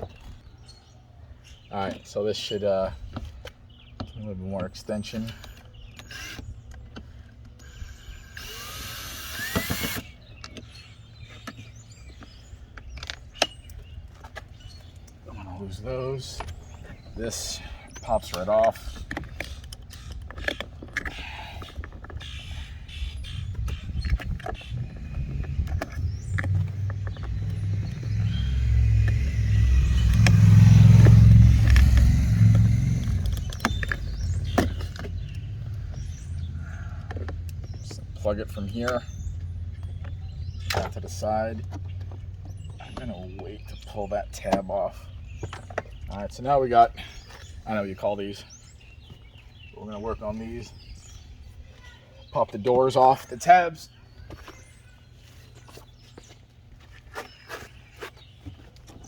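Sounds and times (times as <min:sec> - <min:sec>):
power drill spinning: 0:06.0 - 0:06.5, 0:07.6 - 0:10.2
vehicle passing by rumbling: 0:25.4 - 0:36.9.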